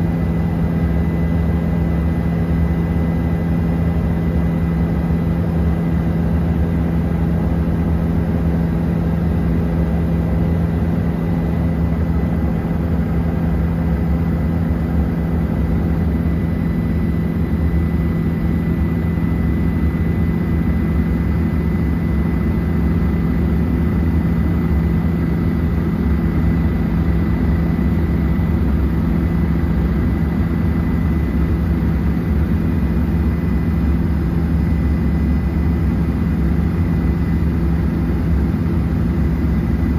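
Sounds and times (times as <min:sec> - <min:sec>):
helicopter droning: 0:00.0 - 0:39.9.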